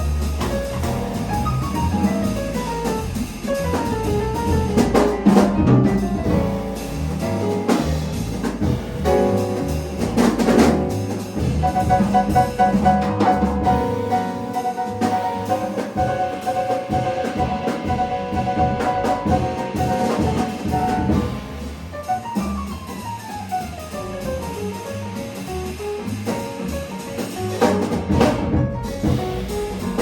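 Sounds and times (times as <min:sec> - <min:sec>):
walking bass line: 0:00.0 - 0:21.8
drum kit and cymbals: 0:00.0 - 0:30.0
piano melody: 0:00.0 - 0:30.0.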